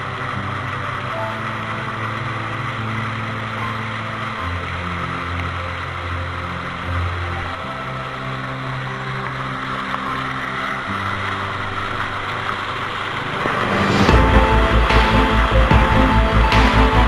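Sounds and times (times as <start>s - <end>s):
sustained synth chords: 0.0s - 17.0s
pulsing beat with heavy bass: 13.5s - 17.0s.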